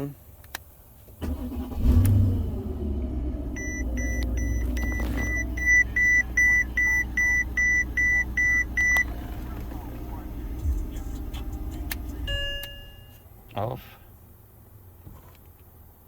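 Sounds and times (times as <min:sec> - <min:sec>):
car engine starting and idling: 0:00.0 - 0:16.0
dashboard warning chime beeping: 0:03.5 - 0:13.3.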